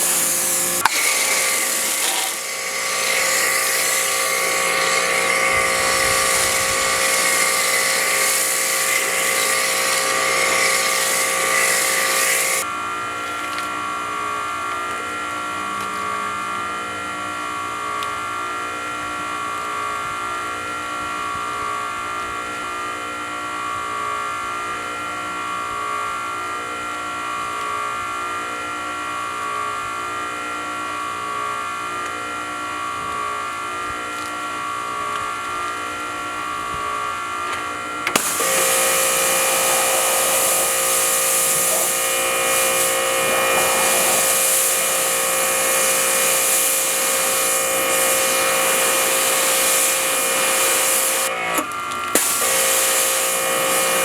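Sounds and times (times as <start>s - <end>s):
motor hum: 0.0s - 12.6s, 35.0s - 54.0s
power tool motor whining: 0.0s - 12.7s, 37.6s - 54.0s.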